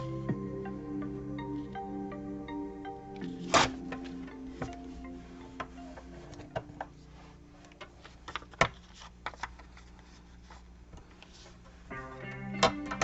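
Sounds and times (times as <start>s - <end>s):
paper rustling: 7.1s - 11.8s.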